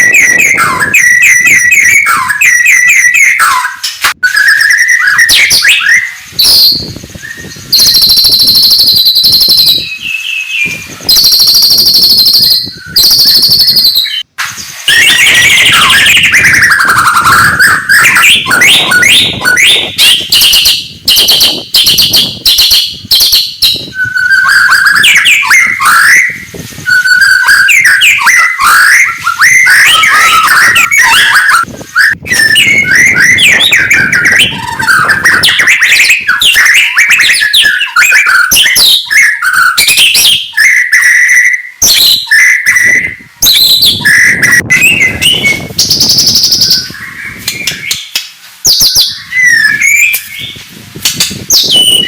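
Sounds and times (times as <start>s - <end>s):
songbird singing whistled phrases: 0.0s - 52.0s.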